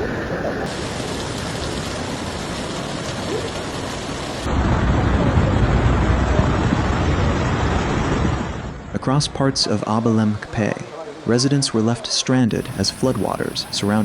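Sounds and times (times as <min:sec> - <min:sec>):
heavy rain hissing: 0:00.0 - 0:08.5, 0:12.5 - 0:14.0
deep rushing noise: 0:04.5 - 0:09.1.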